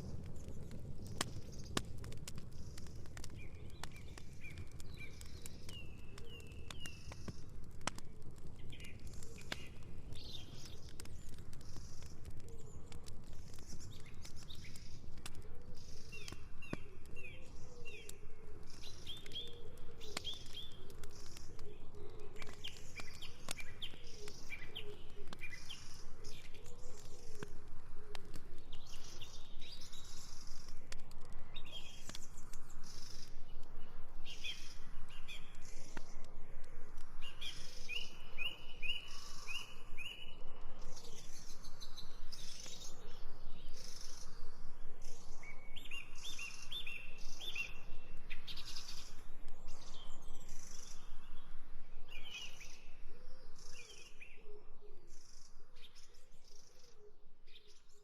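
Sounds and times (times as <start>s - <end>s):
campfire crackling and popping: 0.0s - 54.1s
songbirds chirping: 0.0s - 58.0s.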